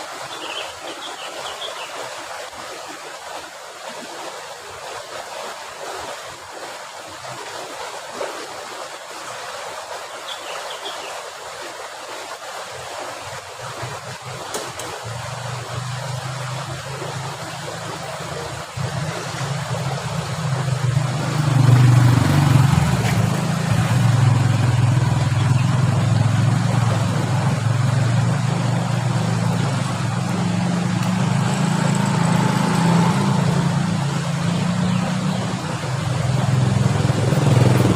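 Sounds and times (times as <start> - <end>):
engine running: 14.0 - 37.9.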